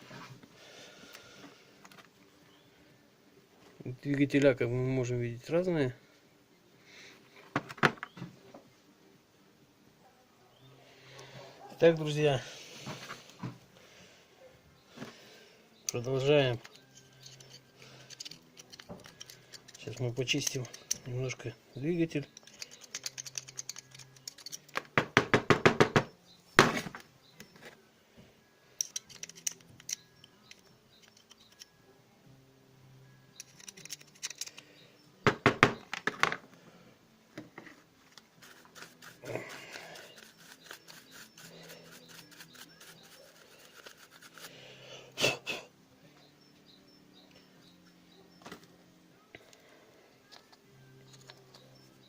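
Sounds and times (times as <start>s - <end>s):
faint background music: 0.0s - 52.0s
scraping and clicking on motor: 16.6s - 21.0s, 22.3s - 24.7s, 38.1s - 44.5s.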